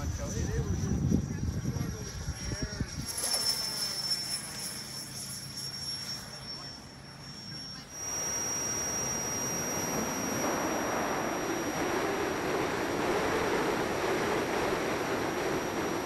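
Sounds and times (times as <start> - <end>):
wavering hum: 0.0 - 16.0
model aircraft rushing noise: 8.0 - 16.0.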